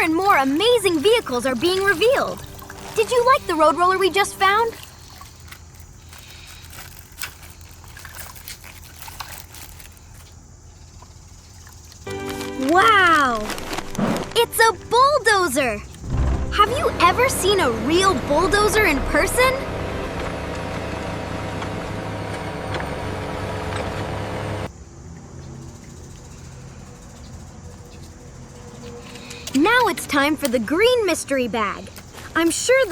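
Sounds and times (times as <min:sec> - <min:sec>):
water pouring from plastic bag: 0:00.0 - 0:10.3, 0:12.1 - 0:15.0
heavy vehicle engine running: 0:15.8 - 0:24.7.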